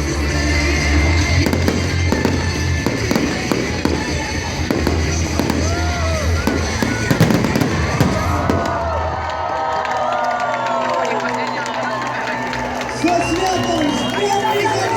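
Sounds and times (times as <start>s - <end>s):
music playing: 0.0s - 9.6s
fireworks bangs and crackles: 0.0s - 10.0s.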